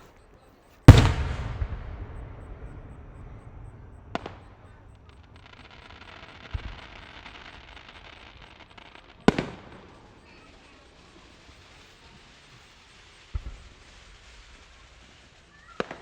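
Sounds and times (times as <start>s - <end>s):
dull low boom: 0.9s - 4.9s
fireworks bangs: 0.9s - 8.1s
crackling hiss: 0.9s - 16.0s.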